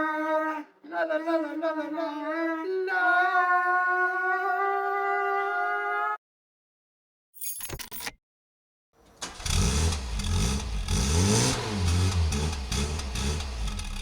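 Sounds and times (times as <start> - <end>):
engine starting and revving: 9.0 - 14.0.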